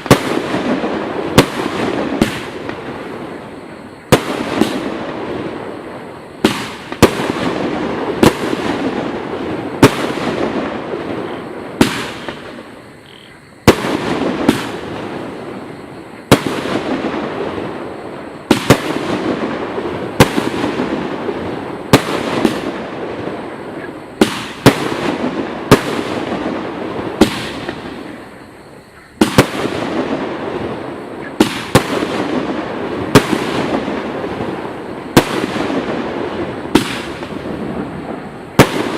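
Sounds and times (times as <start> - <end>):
firework cake bangs: 0.0 - 2.8, 11.8 - 12.6, 18.5 - 21.2, 24.2 - 28.0, 31.2 - 34.5, 35.1 - 38.9.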